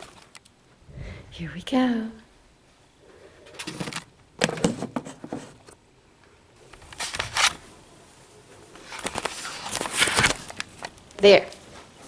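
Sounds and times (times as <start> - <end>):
rustling handling noise: 2.6 - 5.8.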